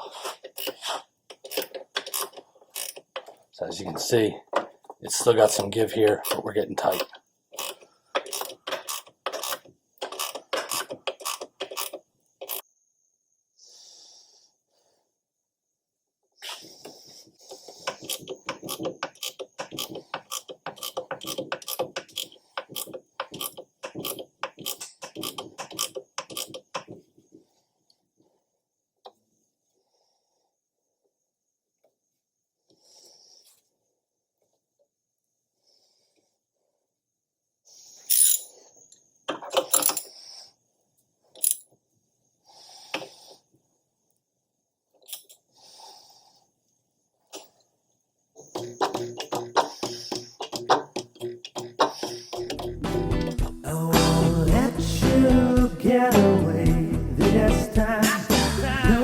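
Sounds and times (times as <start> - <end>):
ratchet wrench clicking: 0.5 - 3.3, 5.5 - 12.7, 17.8 - 26.9
metal tools clinking and rattling: 38.1 - 38.6, 39.4 - 40.1, 41.4 - 41.8.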